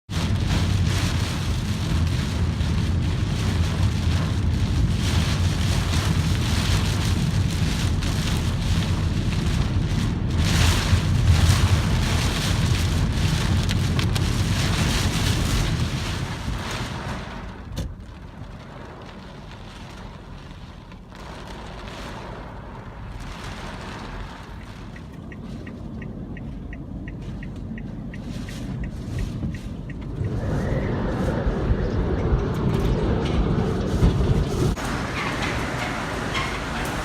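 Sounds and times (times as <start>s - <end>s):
rain: 0.1s - 37.0s
wind buffeting microphone: 23.1s - 37.0s
strong wind gusting: 28.9s - 37.0s.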